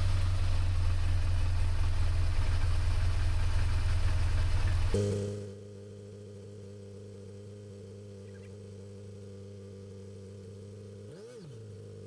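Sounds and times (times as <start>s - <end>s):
motorcycle engine idling: 0.0s - 12.0s
quiet steady hum: 4.7s - 12.0s.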